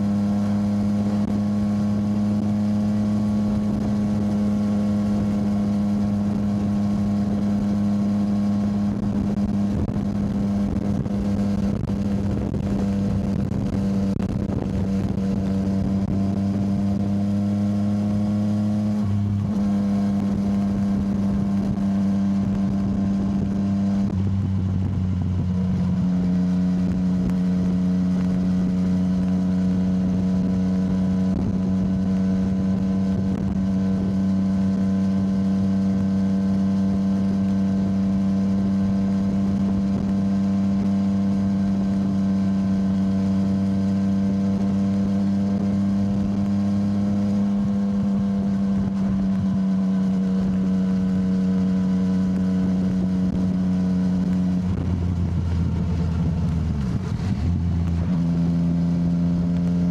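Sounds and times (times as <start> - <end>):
motorcycle engine cruising: 0.0 - 59.9
wind rush: 8.6 - 26.1.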